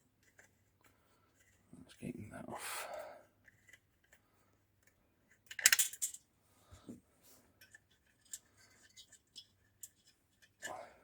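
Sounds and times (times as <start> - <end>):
small metal parts clinking: 5.5 - 6.2.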